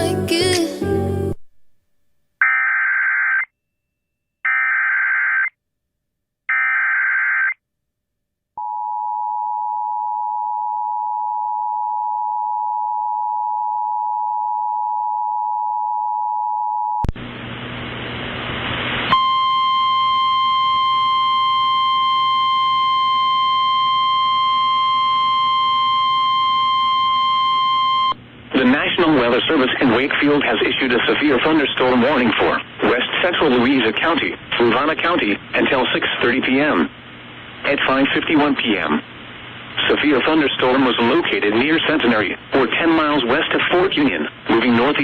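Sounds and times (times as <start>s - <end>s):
hiss-like static: 17.2s - 19.1s.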